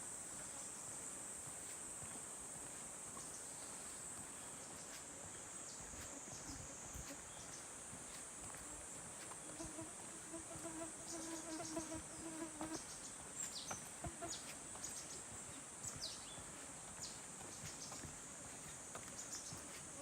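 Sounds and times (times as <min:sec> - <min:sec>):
flying insect buzzing: 0:05.7 - 0:07.6, 0:08.4 - 0:16.8.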